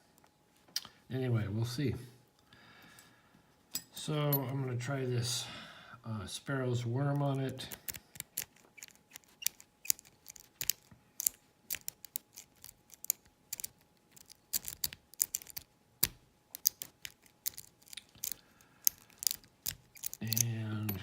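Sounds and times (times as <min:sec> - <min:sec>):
lock pick metal clicks and scrapes: 0:07.7 - 0:21.0.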